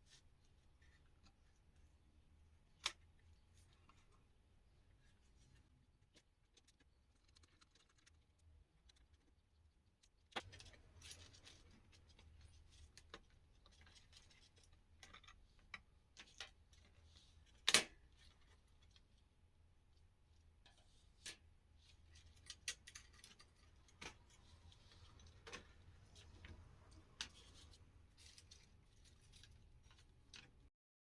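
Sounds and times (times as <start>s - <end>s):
laptop parts and tools clicking: 6.1s - 16.9s, 21.2s - 30.7s.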